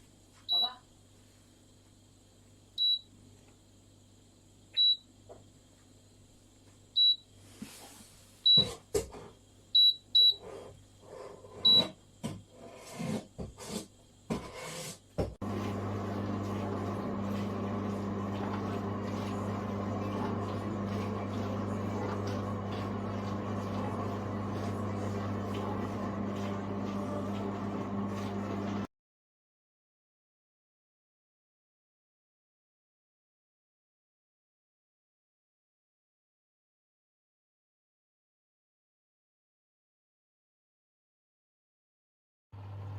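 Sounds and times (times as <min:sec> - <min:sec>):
dishwasher humming and washing: 0:07.7 - 0:28.9, 0:42.6 - 0:42.9.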